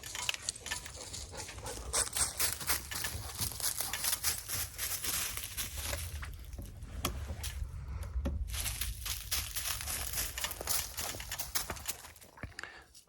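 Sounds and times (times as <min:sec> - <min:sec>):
hands rustling and scraping: 0:00.0 - 0:13.0
wind rumble on microphone: 0:04.5 - 0:11.9.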